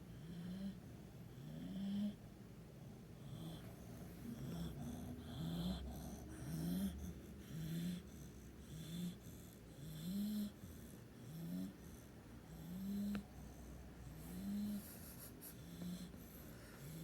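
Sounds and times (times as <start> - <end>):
dog snoring: 0.1 - 2.2, 3.2 - 17.0.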